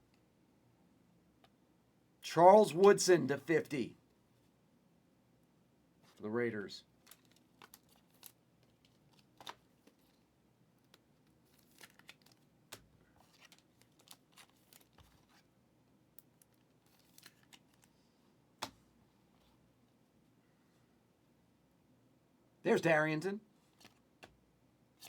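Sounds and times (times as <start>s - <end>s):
trading cards rustling and sliding: 10.9s - 12.4s, 13.2s - 15.5s, 16.8s - 18.0s.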